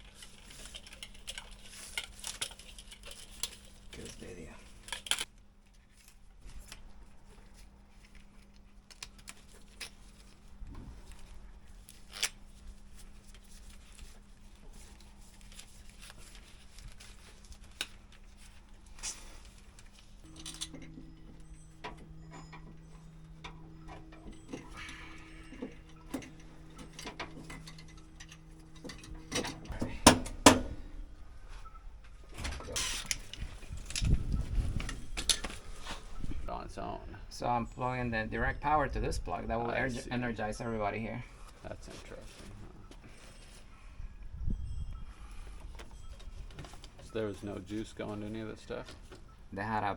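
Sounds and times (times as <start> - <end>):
hand tools clicking and clinking: 0.0 - 5.3, 19.8 - 30.8
steady low hum: 0.0 - 49.9.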